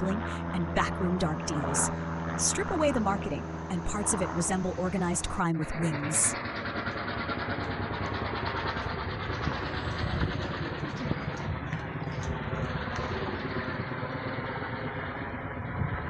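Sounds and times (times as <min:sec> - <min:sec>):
engine rumble: 0:00.0 - 0:16.0.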